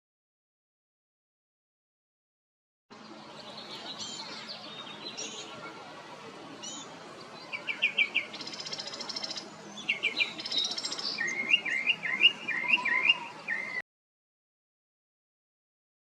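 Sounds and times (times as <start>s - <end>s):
songbirds singing: 2.9s - 13.8s.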